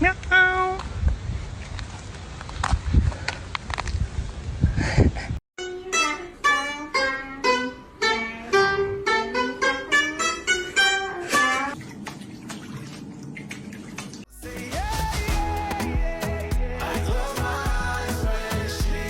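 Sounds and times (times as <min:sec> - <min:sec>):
plucked string notes: 0:05.6 - 0:11.8.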